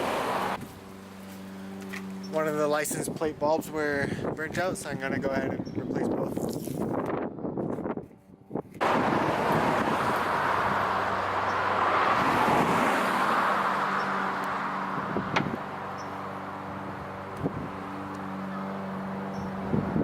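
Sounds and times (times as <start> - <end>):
passing road vehicle: 0.0 - 2.4, 8.8 - 20.0.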